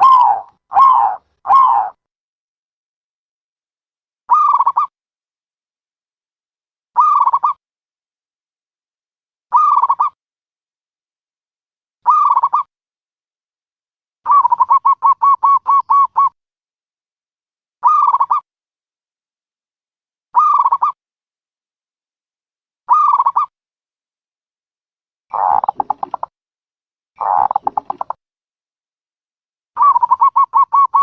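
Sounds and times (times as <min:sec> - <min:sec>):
dove cooing: 0:00.0 - 0:02.0, 0:25.3 - 0:26.2, 0:27.2 - 0:28.0, 0:29.8 - 0:31.0.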